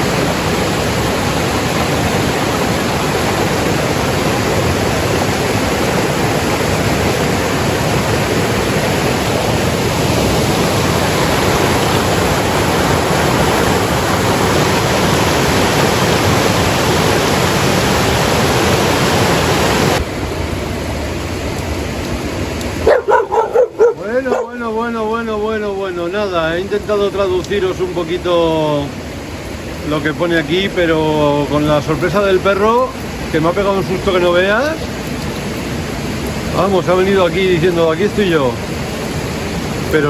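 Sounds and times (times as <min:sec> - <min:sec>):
mountain stream rushing: 0:00.0 - 0:40.0
dog barking: 0:22.8 - 0:24.6.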